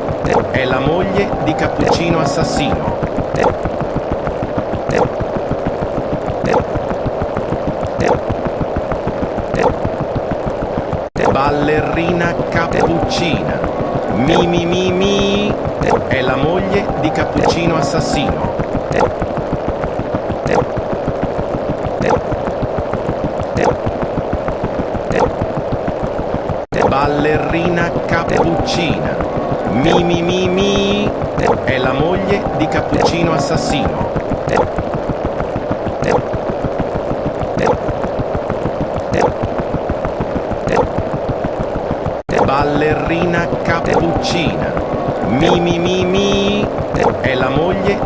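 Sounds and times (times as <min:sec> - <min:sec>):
noisy wash of sound effects: 0:00.0 - 0:48.0
short recurring accent: 0:00.3 - 0:03.6, 0:11.2 - 0:19.2, 0:26.8 - 0:34.7, 0:42.3 - 0:48.0.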